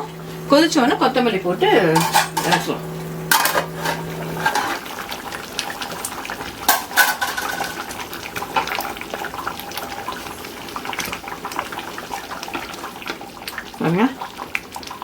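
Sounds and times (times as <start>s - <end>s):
thick gravy bubbling: 0.0s - 15.0s
metal utensil clinking on pan: 1.9s - 4.8s, 6.7s - 7.8s.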